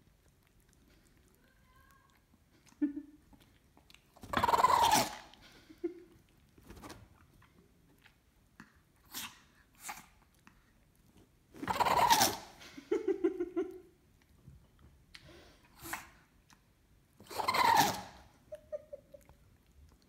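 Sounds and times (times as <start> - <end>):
dog sneezing: 9.1 - 10.0, 11.6 - 12.6, 15.8 - 16.2, 17.2 - 18.2.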